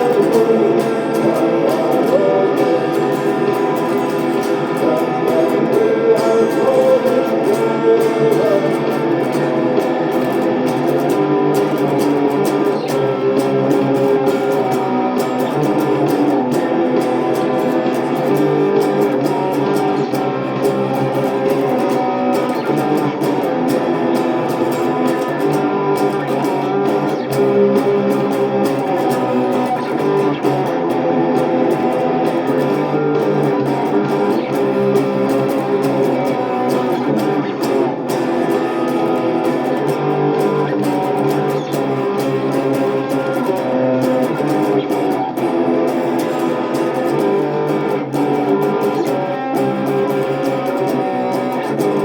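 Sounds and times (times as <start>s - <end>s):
electric guitar playing: 0.0s - 52.0s.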